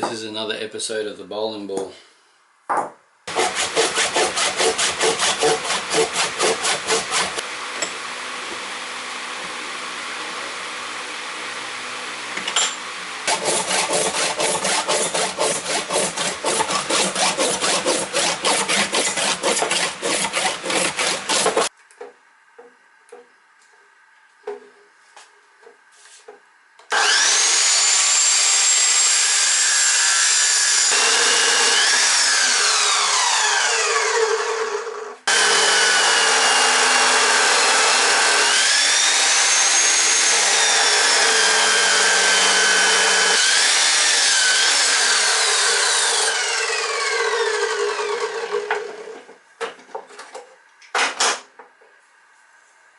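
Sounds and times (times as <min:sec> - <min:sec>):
handsaw cutting plastic: 0:03.3 - 0:07.4, 0:13.2 - 0:21.7, 0:35.3 - 0:48.1
angle grinder whine: 0:26.9 - 0:49.2.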